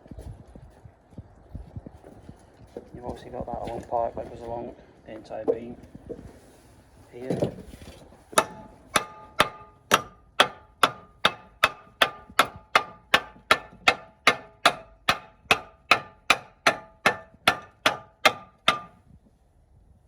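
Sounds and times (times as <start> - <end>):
hammer striking metal: 8.4 - 19.0.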